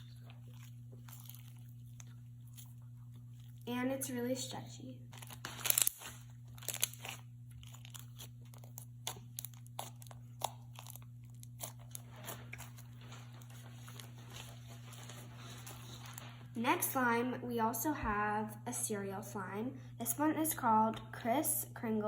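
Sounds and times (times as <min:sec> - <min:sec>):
slime crunching and popping: 0:00.0 - 0:03.6, 0:05.1 - 0:15.1.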